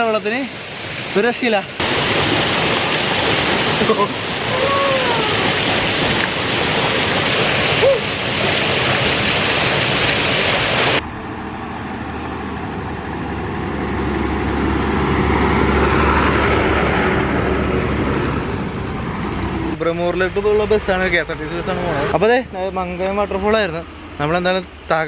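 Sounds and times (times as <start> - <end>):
rushing waterfall: 0.0 - 11.2
bus engine passing: 11.0 - 20.3.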